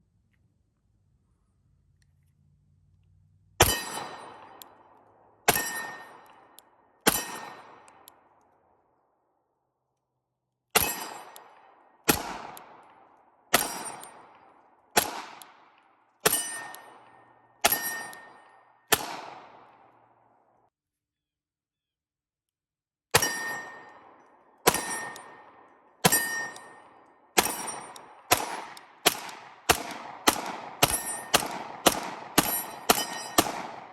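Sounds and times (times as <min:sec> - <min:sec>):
pistol shots ringing: 0:03.6 - 0:08.9, 0:10.7 - 0:20.4, 0:23.1 - 0:33.9.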